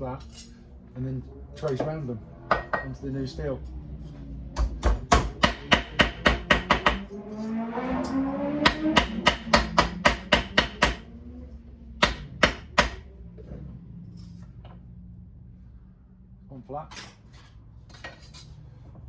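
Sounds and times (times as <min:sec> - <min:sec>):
hammer striking steel panel: 0:04.6 - 0:07.1, 0:08.6 - 0:11.0, 0:12.0 - 0:13.0.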